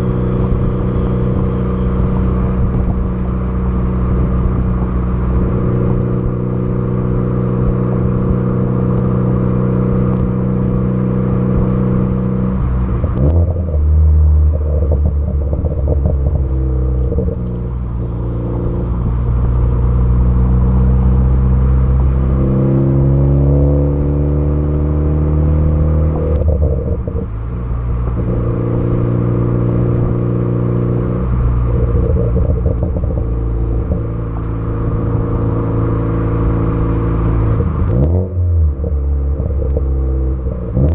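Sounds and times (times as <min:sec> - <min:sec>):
car engine revving: 0:00.0 - 0:40.9
exhaust crackles and pops: 0:10.1 - 0:10.7, 0:12.9 - 0:17.8, 0:26.3 - 0:29.0, 0:31.0 - 0:35.7, 0:38.7 - 0:40.9.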